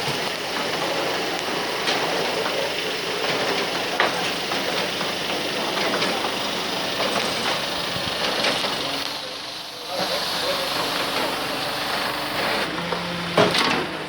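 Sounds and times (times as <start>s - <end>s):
machine running: 0.0s - 14.0s.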